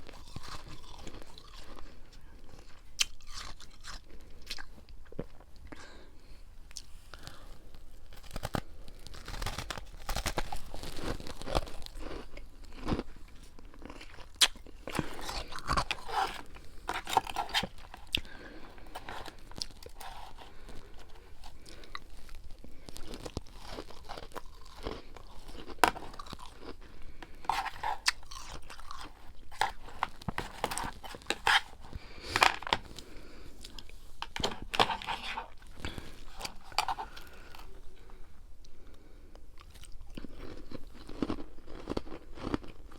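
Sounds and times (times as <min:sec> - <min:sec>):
person crunching and chewing frost: 0:00.0 - 0:42.9.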